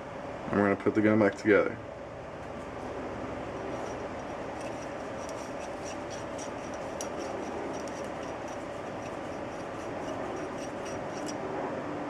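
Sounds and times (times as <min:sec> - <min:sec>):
cloth rubbing on metal: 0:03.6 - 0:11.4.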